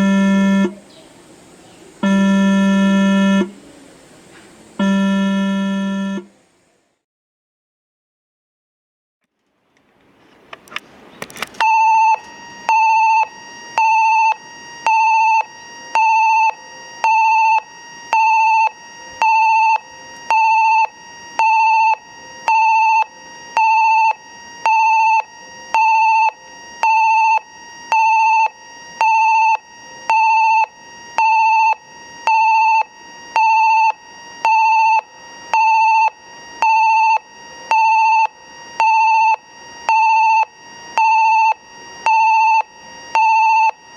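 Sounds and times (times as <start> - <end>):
electronic warning beeps: 0.0 - 0.8, 2.0 - 3.6, 4.8 - 6.3, 11.6 - 43.9.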